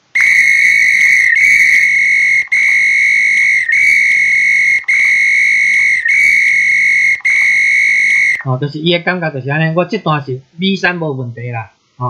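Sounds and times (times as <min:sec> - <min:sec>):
high whistle tone from loudspeaker: 0:00.0 - 0:08.4.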